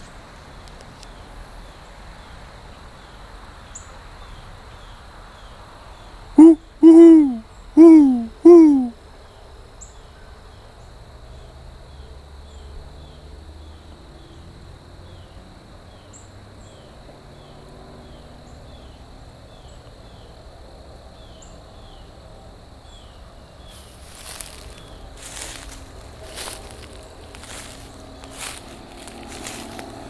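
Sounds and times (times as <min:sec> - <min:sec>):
insect chirping: 0:18.1 - 0:30.0.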